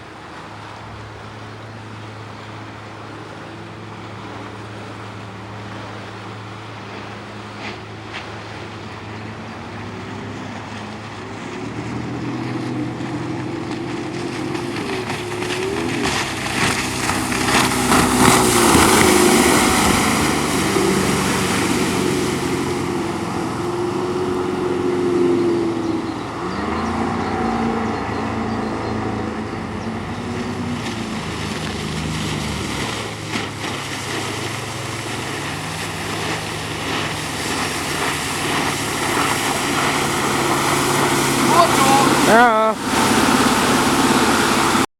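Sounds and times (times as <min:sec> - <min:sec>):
outboard motor running: 0:00.0 - 0:44.9
water and wind rushing: 0:00.0 - 0:44.9.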